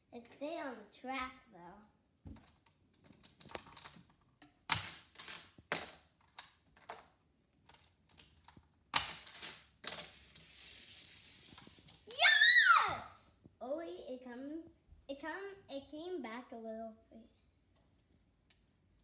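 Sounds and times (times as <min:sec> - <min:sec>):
plastic toy track clicking: 0:02.4 - 0:12.2.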